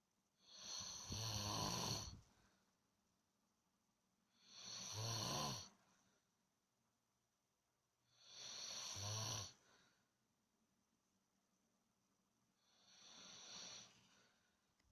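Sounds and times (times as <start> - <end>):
rattling breathy snores: 0.4 - 2.2, 4.4 - 5.7, 8.1 - 9.6, 12.6 - 14.1.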